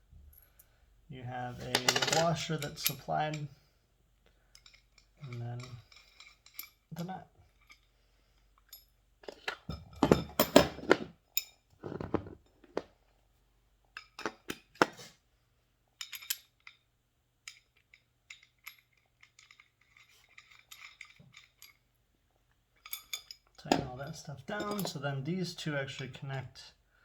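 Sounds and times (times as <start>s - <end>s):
metal parts clinking: 1.6s - 3.5s, 4.5s - 12.8s, 16.0s - 22.0s, 22.7s - 25.2s.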